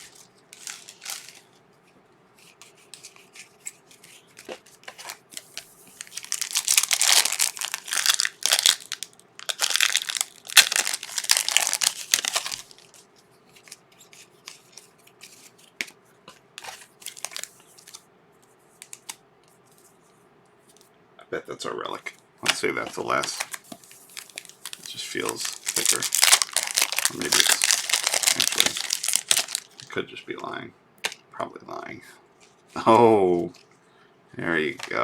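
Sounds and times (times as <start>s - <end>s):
wrapper tearing and crinkling: 0.0s - 1.4s, 5.0s - 13.0s, 16.6s - 18.0s, 23.3s - 29.9s.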